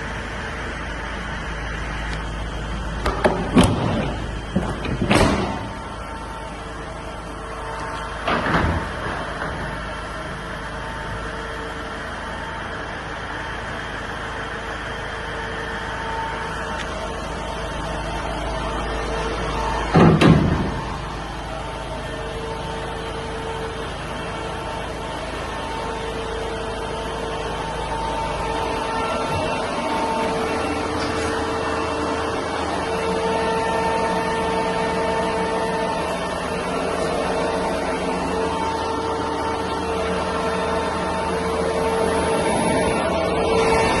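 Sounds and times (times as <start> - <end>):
van engine idling: 0.0 - 44.0
door shutting: 3.0 - 5.9, 8.2 - 9.8, 19.8 - 21.0.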